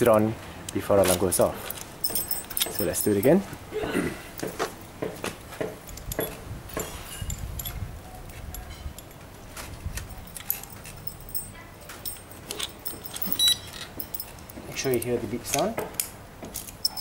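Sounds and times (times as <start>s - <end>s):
keys and padlock rattling: 1.0s - 3.4s, 5.9s - 17.0s.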